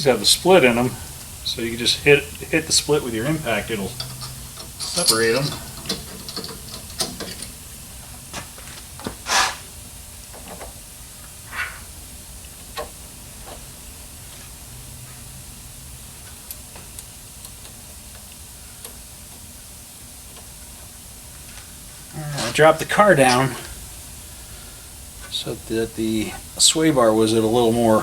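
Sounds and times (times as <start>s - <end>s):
steady hiss: 0.0s - 9.9s, 21.5s - 28.0s
tools clicking and knocking: 3.9s - 7.6s.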